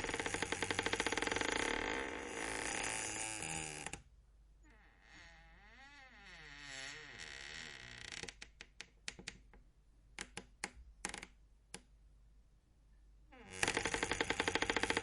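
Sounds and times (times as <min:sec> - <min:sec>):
door creaking: 0:00.0 - 0:04.0, 0:04.6 - 0:08.6, 0:13.3 - 0:15.0.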